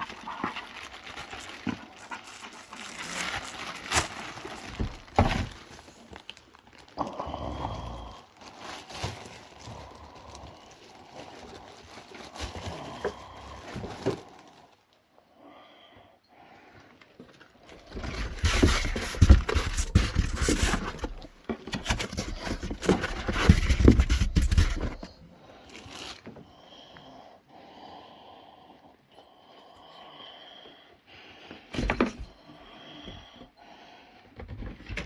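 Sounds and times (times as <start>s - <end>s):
packaging rustling and crinkling: 0.0s - 14.9s, 17.3s - 26.4s.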